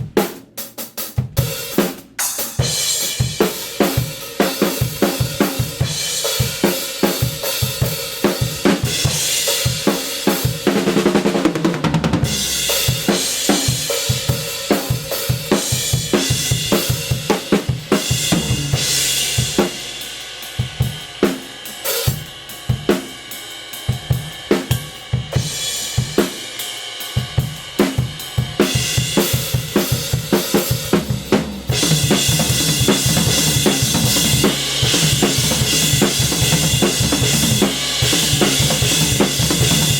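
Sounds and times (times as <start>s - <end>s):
kick and snare drums: 0.0s - 20.0s, 27.2s - 39.9s
hi-hats and cymbal wash: 12.4s - 39.9s.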